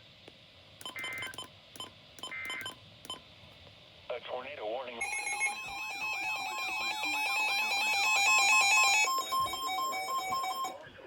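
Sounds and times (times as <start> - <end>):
rapidly switching beeping tones: 0.8 - 3.2, 5.0 - 10.8
two-tone attention signal: 5.0 - 10.8.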